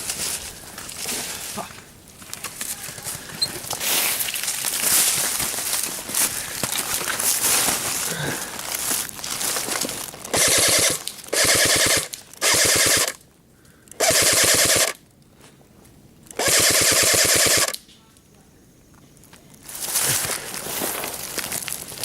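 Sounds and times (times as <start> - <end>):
airsoft gun full-auto bursts: 10.3 - 13.2, 14.0 - 15.0, 16.4 - 17.8.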